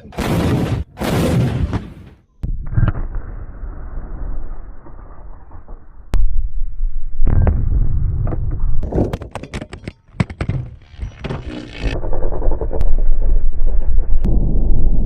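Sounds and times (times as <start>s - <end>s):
heavy low rumble: 12.0s - 15.0s.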